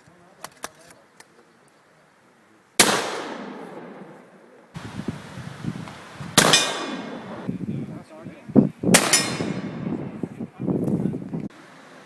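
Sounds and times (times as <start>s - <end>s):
pistol shots: 2.8s - 4.1s, 6.4s - 7.4s, 8.9s - 9.7s.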